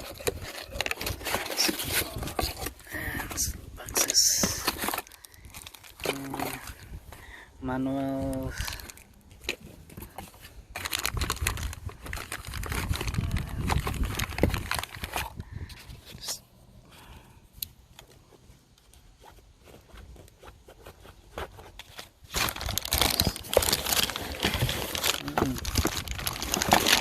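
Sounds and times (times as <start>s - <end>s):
packaging crinkling and rustling: 0.0s - 7.2s, 7.8s - 16.1s, 21.4s - 27.0s.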